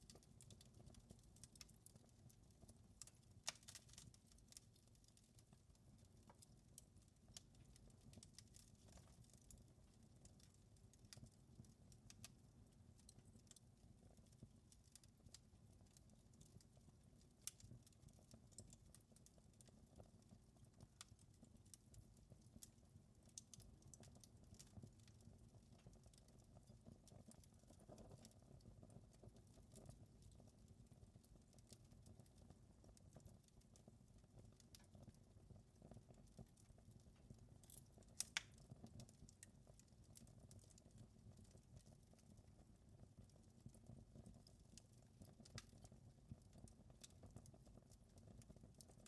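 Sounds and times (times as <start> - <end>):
wood fire crackling: 0.0 - 49.0.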